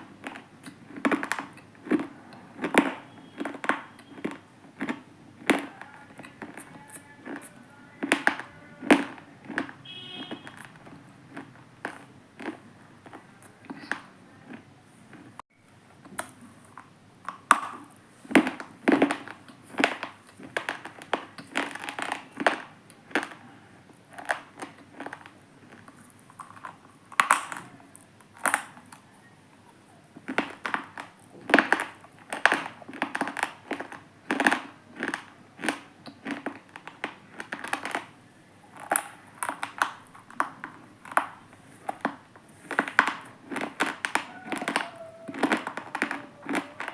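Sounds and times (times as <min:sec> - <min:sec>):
stone chunks being crushed: 0:17.3 - 0:23.4, 0:24.1 - 0:28.9, 0:30.2 - 0:38.1, 0:38.8 - 0:46.9.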